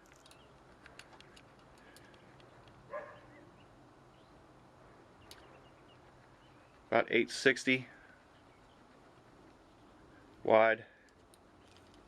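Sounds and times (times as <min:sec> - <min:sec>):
light clicks: 0:00.0 - 0:02.8, 0:05.2 - 0:05.5.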